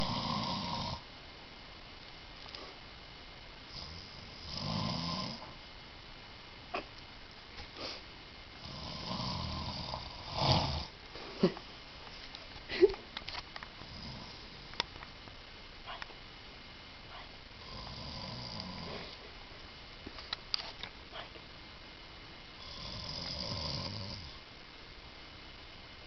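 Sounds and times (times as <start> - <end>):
loud snoring: 0.0 - 1.0, 3.7 - 5.5, 8.6 - 10.9, 13.8 - 14.4, 17.6 - 19.0, 22.6 - 24.4.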